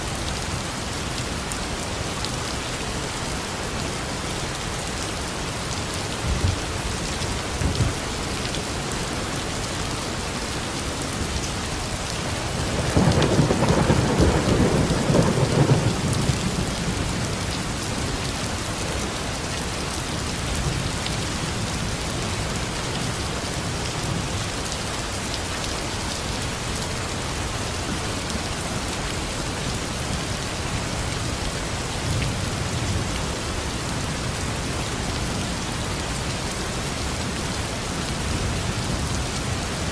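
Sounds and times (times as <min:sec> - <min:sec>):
steady rain falling: 0:00.0 - 0:39.9
thunder rumbling: 0:12.5 - 0:17.3.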